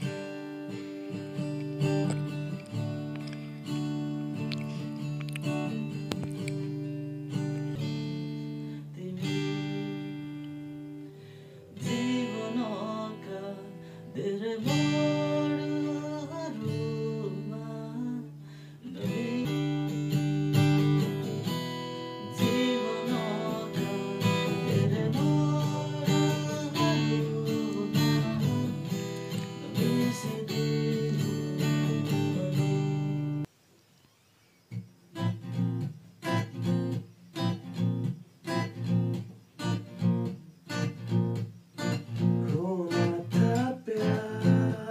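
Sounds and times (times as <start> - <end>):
acoustic guitar strumming: 0.0 - 33.5, 34.7 - 44.9
person singing: 8.8 - 10.3, 11.7 - 20.4, 22.2 - 33.4, 42.4 - 44.9.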